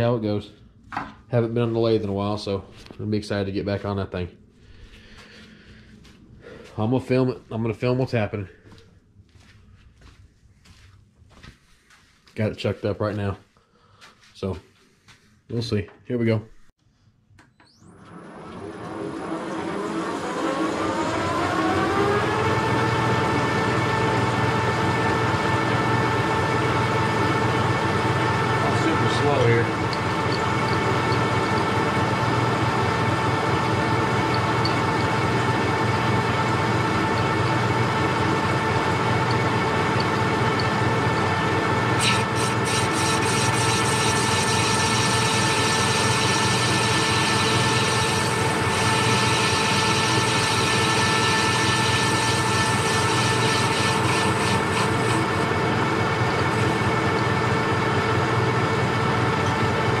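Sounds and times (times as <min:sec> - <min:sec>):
lathe motor whine: 0:17.6 - 1:00.0
cutting tool scraping urethane: 0:42.0 - 0:55.3.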